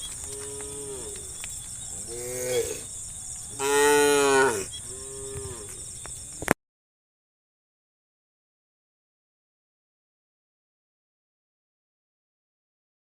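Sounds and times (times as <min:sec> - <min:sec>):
drawn-out animal calls: 0:00.0 - 0:05.8
high-pitched hiss: 0:00.0 - 0:06.6.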